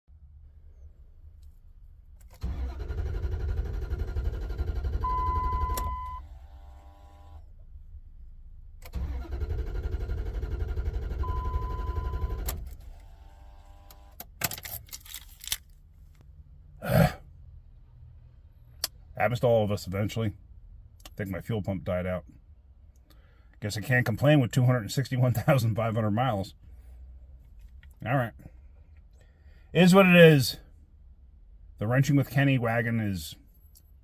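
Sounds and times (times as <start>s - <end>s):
engine cranking on starter: 2.3s - 7.4s, 8.8s - 13.3s.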